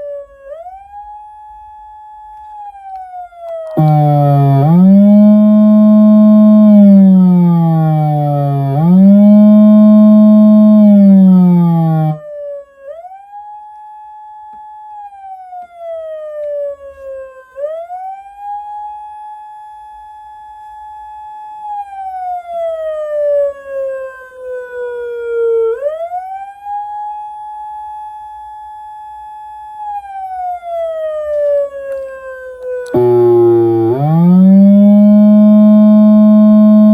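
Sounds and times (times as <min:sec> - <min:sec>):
siren wail: 0:02.9 - 0:12.4, 0:32.8 - 0:36.9
loud low siren tone: 0:03.6 - 0:12.3, 0:32.9 - 0:36.9.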